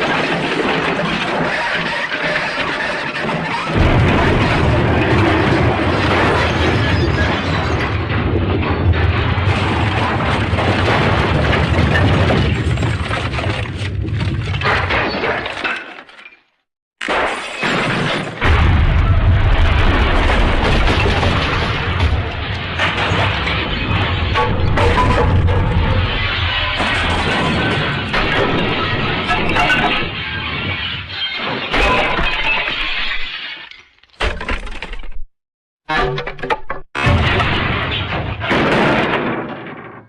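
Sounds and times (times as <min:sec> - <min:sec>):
cartoon smashing and shattering: 0:00.0 - 0:16.4, 0:17.0 - 0:35.3, 0:35.9 - 0:40.0.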